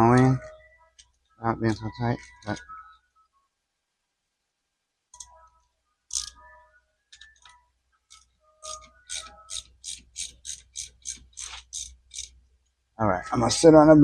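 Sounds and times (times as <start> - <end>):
ratchet wrench clicking: 6.1 - 6.4, 8.1 - 12.4.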